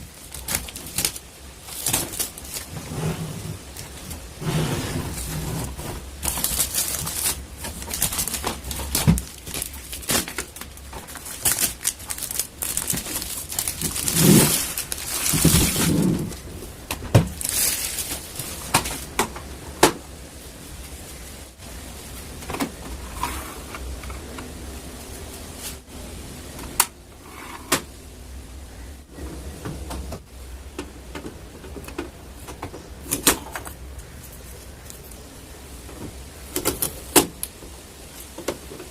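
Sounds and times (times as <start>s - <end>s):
plastic and cardboard rustling: 0.0s - 20.0s, 20.8s - 28.0s.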